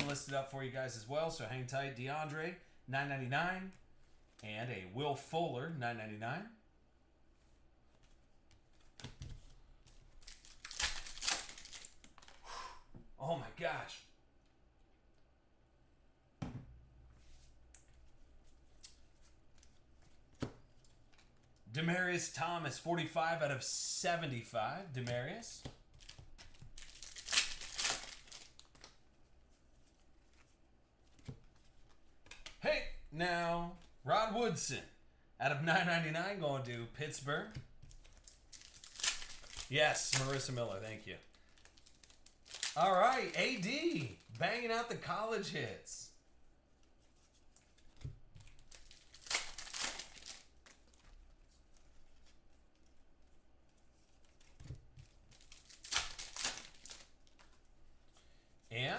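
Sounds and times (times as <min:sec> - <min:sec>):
cards being handled: 0:00.0 - 0:00.4, 0:07.5 - 0:12.4, 0:17.2 - 0:21.6, 0:24.8 - 0:32.6, 0:37.3 - 0:45.5, 0:46.7 - 0:58.2
foil wrapper tearing and crinkling: 0:10.2 - 0:12.3, 0:26.6 - 0:28.8, 0:38.1 - 0:40.6, 0:48.6 - 0:50.9, 0:55.3 - 0:57.5
soft thump: 0:16.4 - 0:16.8.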